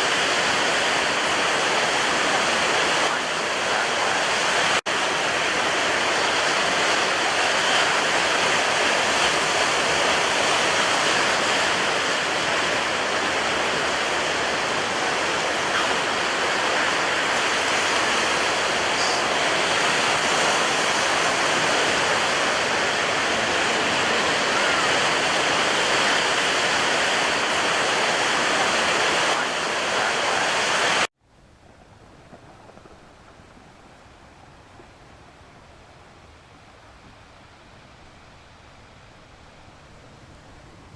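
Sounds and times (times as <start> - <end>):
water rushing: 0.0 - 31.1.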